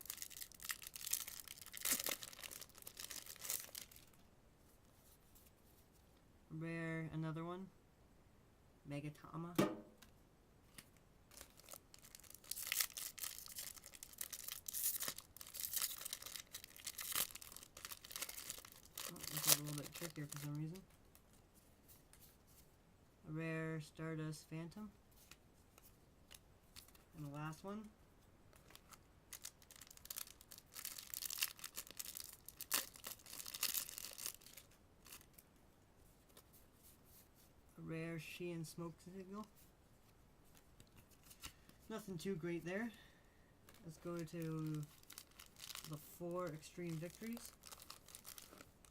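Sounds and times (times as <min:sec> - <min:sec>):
foil pack being torn and crinkled: 0:00.0 - 0:04.2, 0:11.3 - 0:20.6, 0:28.6 - 0:35.4, 0:43.7 - 0:48.9.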